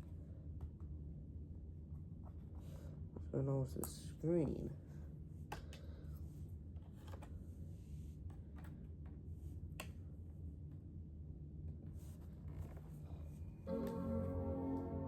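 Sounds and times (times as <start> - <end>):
steady low hum: 0.0 - 15.0
music: 13.7 - 15.0.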